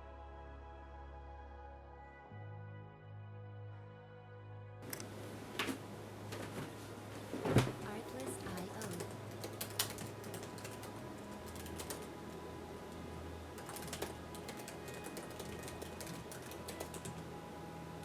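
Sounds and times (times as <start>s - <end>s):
soft background music: 0.0s - 18.0s
keyboard typing clicks: 7.9s - 12.3s, 13.6s - 17.2s.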